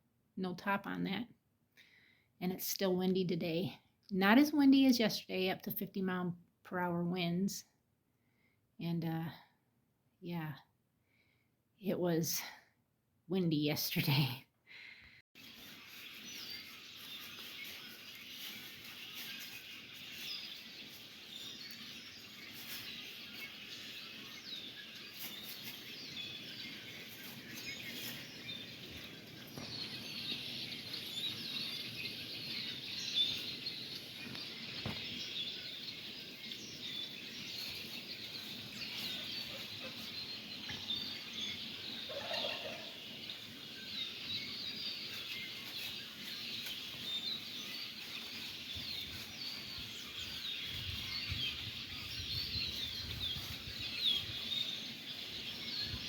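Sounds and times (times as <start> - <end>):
birds chirping and twittering: 15.4 - 56.0
lower-pitched bird call: 40.6 - 43.2.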